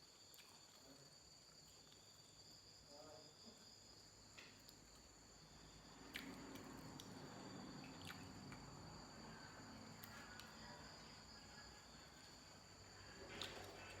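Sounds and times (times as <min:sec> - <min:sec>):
soft chewing and mouth clicks: 0:00.0 - 0:02.4, 0:04.3 - 0:05.2, 0:06.0 - 0:12.4, 0:13.0 - 0:14.0
crickets droning: 0:00.0 - 0:14.0.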